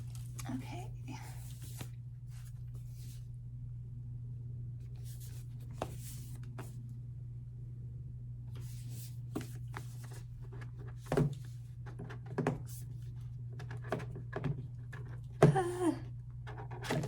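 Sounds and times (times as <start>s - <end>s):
paper and cardboard rustling: 0.0s - 3.2s
low hum: 0.0s - 11.9s.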